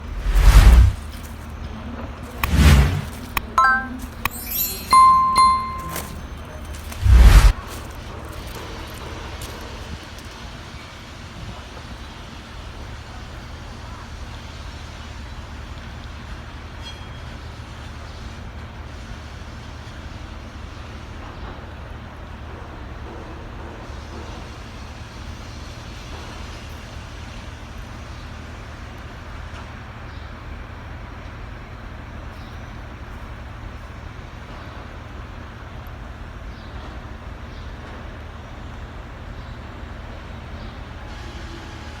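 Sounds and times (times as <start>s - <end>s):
faint even noise: 0.0s - 1.3s
rail yard hum and rumble: 5.0s - 42.0s.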